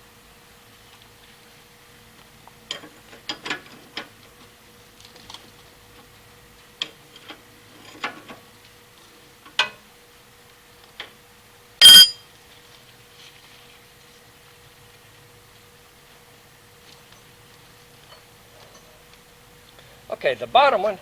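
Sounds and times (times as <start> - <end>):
loud metallic clank: 11.8 - 12.2
metal tools clinking: 11.8 - 12.2.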